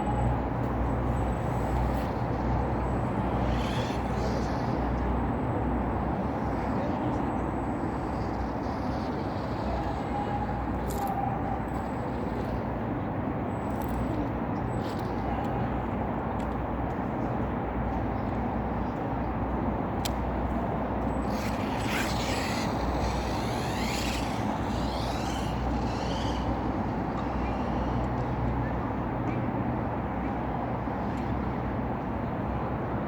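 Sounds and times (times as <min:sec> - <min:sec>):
toy car electric motors whining: 0:00.0 - 0:12.5, 0:21.0 - 0:28.4.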